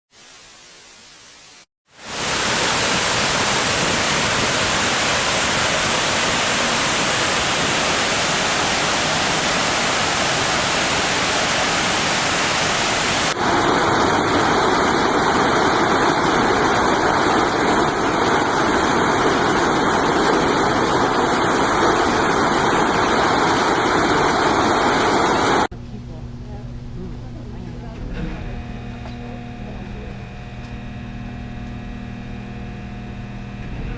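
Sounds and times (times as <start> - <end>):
water rushing from dam: 1.9 - 25.7.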